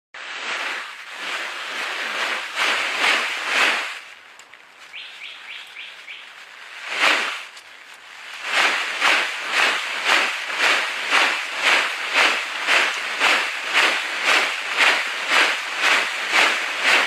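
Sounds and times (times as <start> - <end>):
small bird chirping: 4.9 - 6.5
loud rasping bursts of noise: 8.4 - 17.0.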